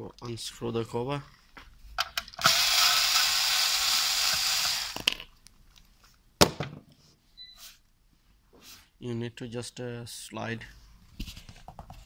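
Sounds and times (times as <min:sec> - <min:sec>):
electric screwdriver whirring: 0:02.4 - 0:05.1.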